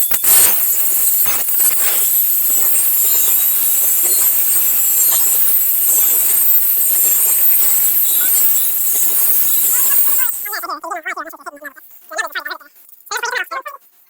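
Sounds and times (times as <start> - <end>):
angle grinder grinding steel: 0.0 - 10.7.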